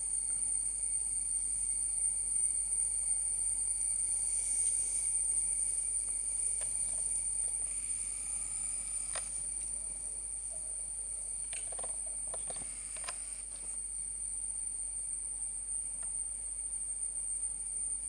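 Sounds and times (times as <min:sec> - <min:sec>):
insect trilling: 0:02.1 - 0:18.0
short clicks: 0:12.3 - 0:13.2.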